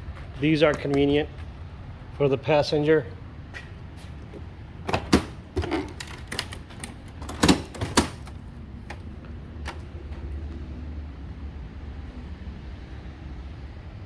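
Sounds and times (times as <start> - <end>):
motorcycle parts clicking and knocking: 0.5 - 1.5, 4.2 - 10.4.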